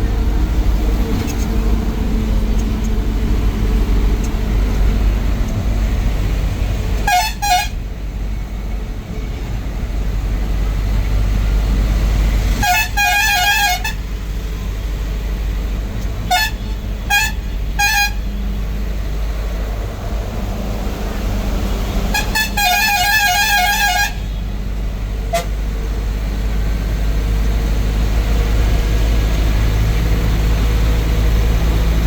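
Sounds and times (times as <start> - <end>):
bus rumbling: 0.0 - 32.0
bus horn honking: 7.0 - 8.1, 12.4 - 14.7, 16.0 - 18.8, 21.7 - 25.8.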